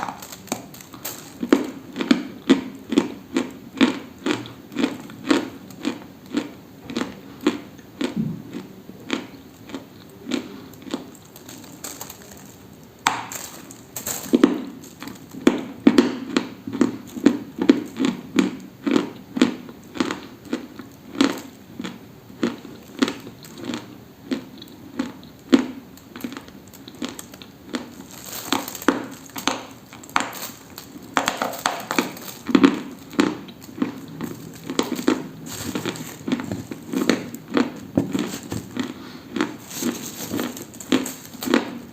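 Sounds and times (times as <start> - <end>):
dry crunching: 0.0 - 1.8, 10.5 - 15.5, 26.2 - 41.9.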